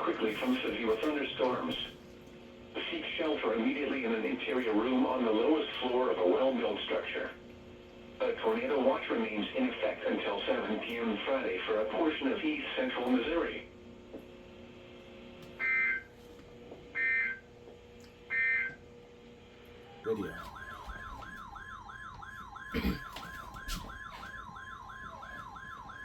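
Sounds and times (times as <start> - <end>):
warbling alarm: 15.6 - 16.1, 16.9 - 17.5, 18.3 - 18.8, 19.8 - 26.0.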